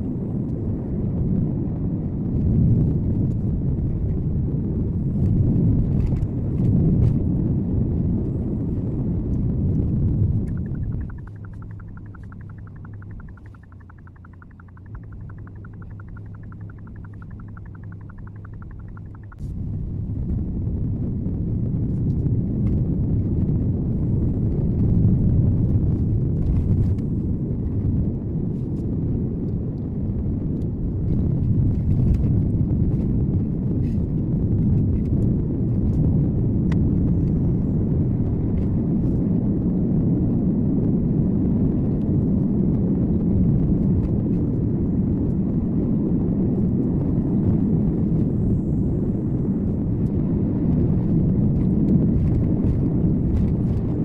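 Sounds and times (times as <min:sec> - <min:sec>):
car road rumble: 0:00.0 - 0:54.0
faint ticks: 0:10.4 - 0:19.4.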